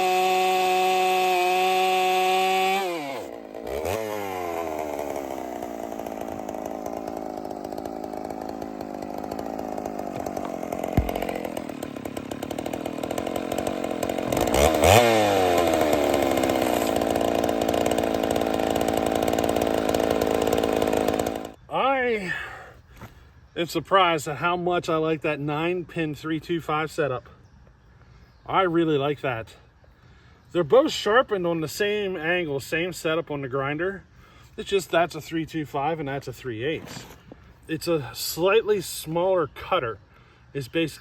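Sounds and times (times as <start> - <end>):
chainsaw cutting wood: 0.0 - 21.6, 36.8 - 37.5.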